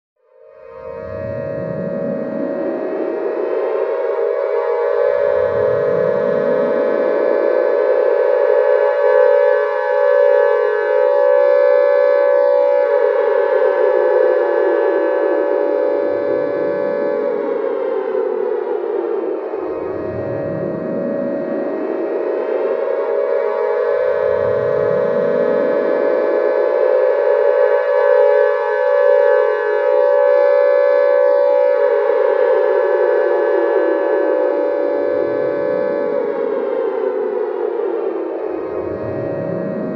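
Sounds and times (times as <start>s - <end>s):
siren-like creature wail: 0.6s - 39.9s
lower pitch sliding downward: 1.0s - 8.6s, 14.0s - 28.5s.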